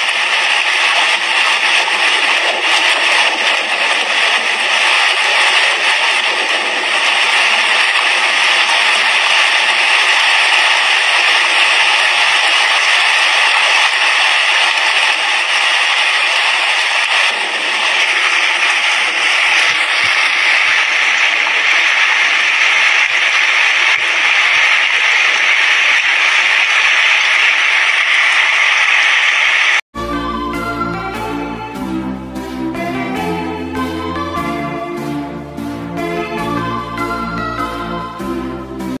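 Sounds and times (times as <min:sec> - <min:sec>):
heavy rain on a roof: 0:00.0 - 0:29.8.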